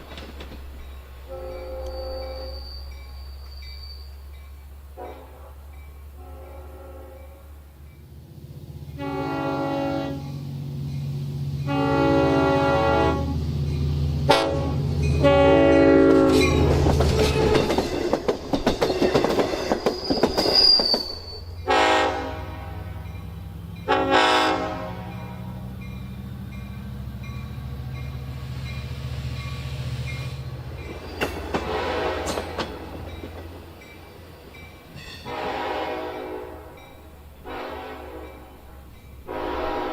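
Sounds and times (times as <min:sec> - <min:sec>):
wheels clicking over rail joints: 0:00.0 - 0:04.8, 0:15.0 - 0:21.7, 0:25.1 - 0:35.4
locomotive air horn blasts: 0:01.3 - 0:03.3, 0:04.9 - 0:07.5, 0:08.9 - 0:10.4, 0:11.6 - 0:13.5, 0:14.3 - 0:17.7, 0:21.6 - 0:23.2, 0:23.8 - 0:25.7, 0:31.3 - 0:33.0, 0:35.0 - 0:39.9
high wheel squeal: 0:01.4 - 0:04.6, 0:16.2 - 0:21.7, 0:28.7 - 0:35.3
diesel engine humming low: 0:21.5 - 0:31.0.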